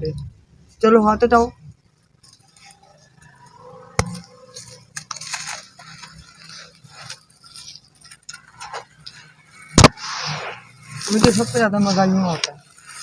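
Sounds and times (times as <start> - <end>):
concrete crunching and snapping: 4.0 - 9.1.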